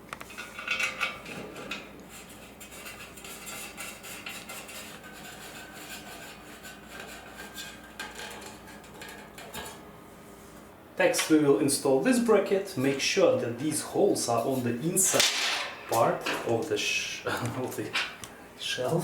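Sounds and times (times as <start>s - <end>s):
steel parts clinking and rattling: 0.3s - 1.9s.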